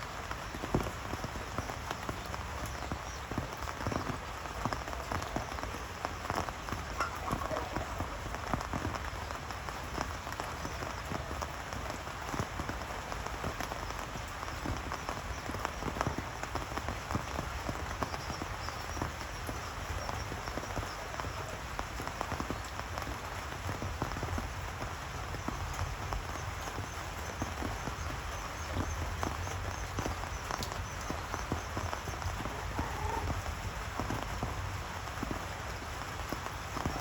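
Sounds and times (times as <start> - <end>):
steady rain falling: 0.0 - 37.0.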